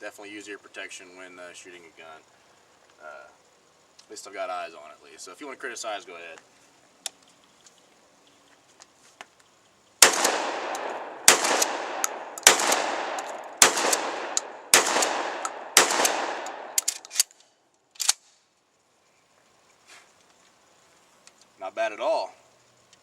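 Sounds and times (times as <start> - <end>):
shotgun blasts with echo: 10.0 - 16.9.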